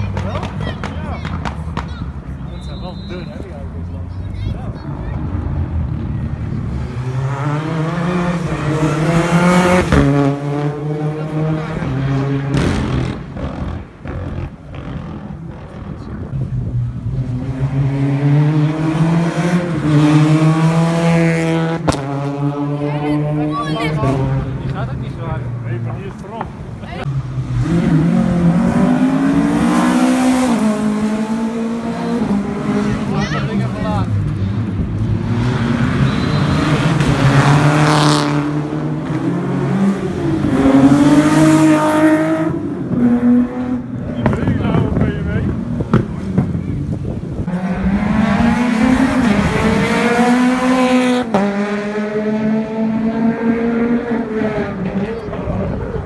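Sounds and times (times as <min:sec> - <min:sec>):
rally car engine revving: 0:04.7 - 0:56.0.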